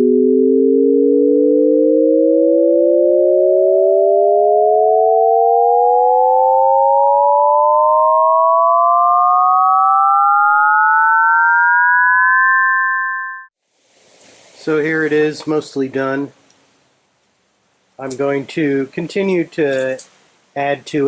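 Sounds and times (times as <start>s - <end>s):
rising electronic sine tones: 0.0s - 13.6s.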